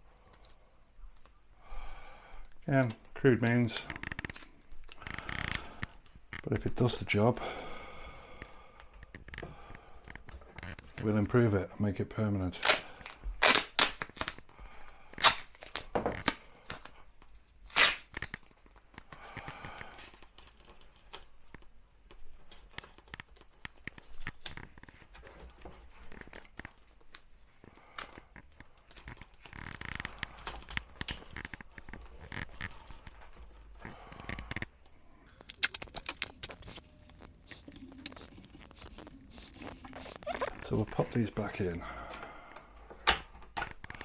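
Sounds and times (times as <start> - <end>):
duct tape pulled and torn: 12.5 - 14.4, 15.2 - 17.0, 17.6 - 19.0, 27.8 - 33.2, 35.3 - 40.6.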